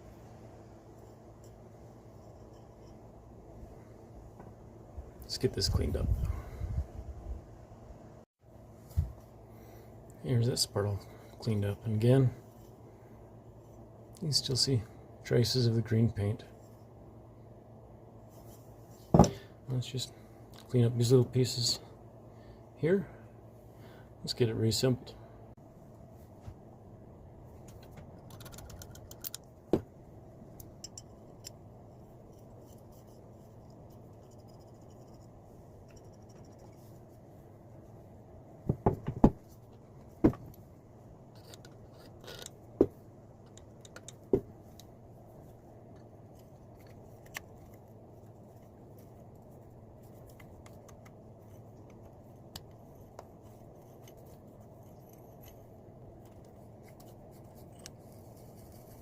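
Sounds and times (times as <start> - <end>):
metal parts clinking and knocking: 30.6 - 31.6, 41.3 - 42.6.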